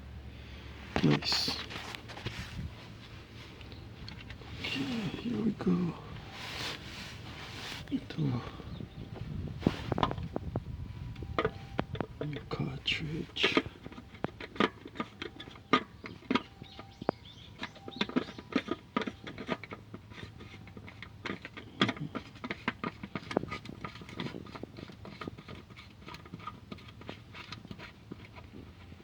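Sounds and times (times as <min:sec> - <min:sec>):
oil filter clicks and knocks: 0:03.5 - 0:04.6, 0:08.4 - 0:29.0.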